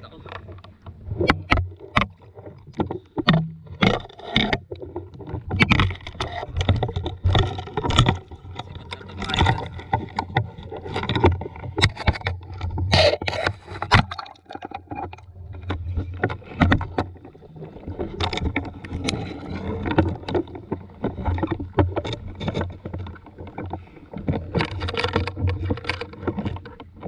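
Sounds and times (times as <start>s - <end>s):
water sloshing and splashing: 0.0s - 27.0s
knocks and clicks: 0.2s - 17.2s.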